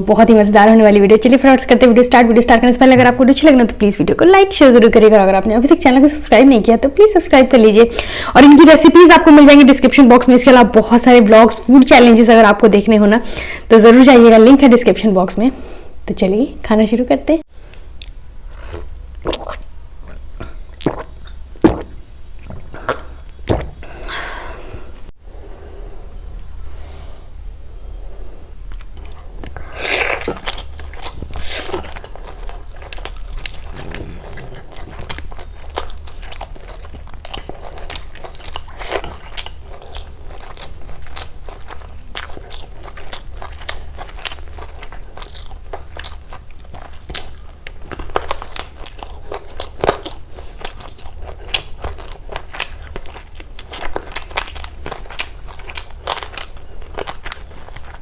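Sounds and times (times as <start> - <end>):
wet mouth clicks: 17.7 - 23.8
person chewing and crunching food: 17.7 - 25.0, 28.6 - 58.0.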